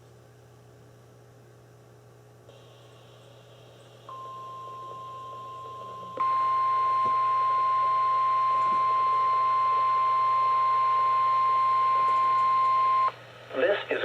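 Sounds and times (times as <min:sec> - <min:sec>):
high-pitched alarm tone: 0:04.1 - 0:13.1.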